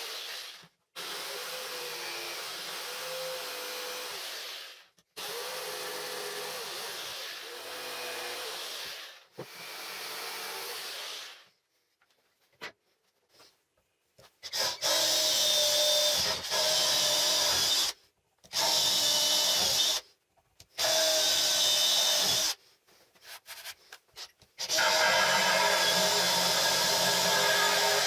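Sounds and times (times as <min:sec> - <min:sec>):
power tool whining under load: 0:24.6 - 0:28.0.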